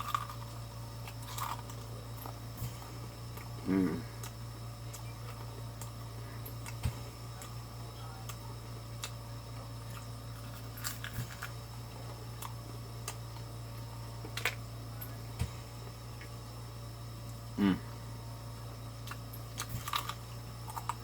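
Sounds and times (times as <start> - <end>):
chewing crunches: 0.0 - 14.7, 19.0 - 21.0
low electrical hum: 0.0 - 21.0.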